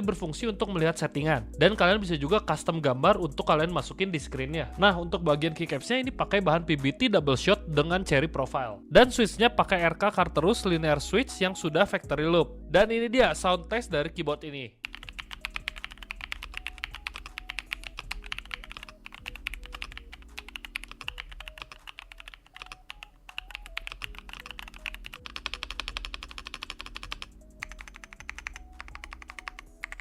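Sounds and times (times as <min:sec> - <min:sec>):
mechanical keyboard typing: 0:14.8 - 0:30.0.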